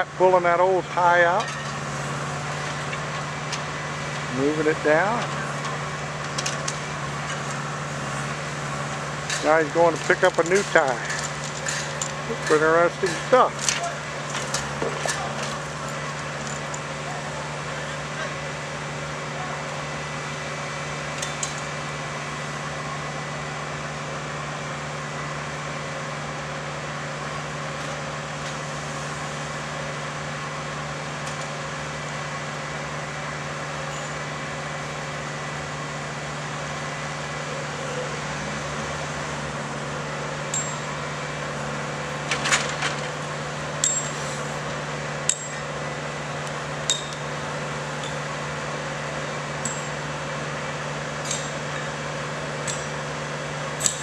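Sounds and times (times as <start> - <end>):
diesel engine idling: 0.0 - 54.0.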